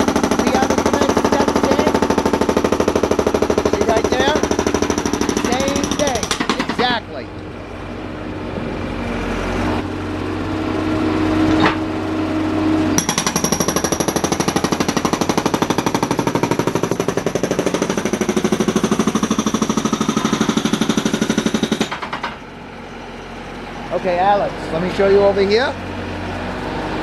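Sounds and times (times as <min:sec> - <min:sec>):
concrete breaker hammering: 0:00.0 - 0:07.0, 0:13.0 - 0:22.4
engine and hydraulics running: 0:00.0 - 0:27.0.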